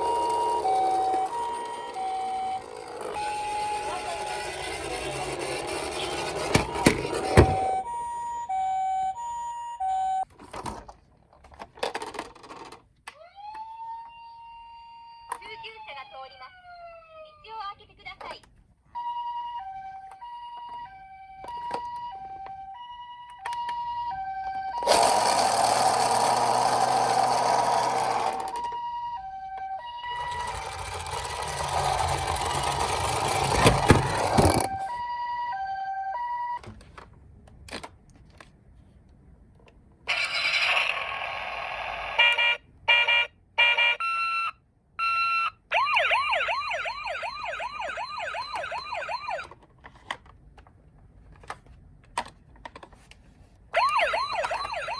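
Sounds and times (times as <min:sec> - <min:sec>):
wavering wailing siren: 0:00.0 - 0:10.2, 0:13.2 - 0:17.4, 0:19.0 - 0:25.1, 0:28.1 - 0:36.6, 0:45.0 - 0:49.5, 0:53.8 - 0:54.9
toy two-tone siren: 0:00.0 - 0:10.3, 0:13.2 - 0:17.4, 0:19.0 - 0:36.6, 0:40.1 - 0:49.5, 0:53.8 - 0:54.9.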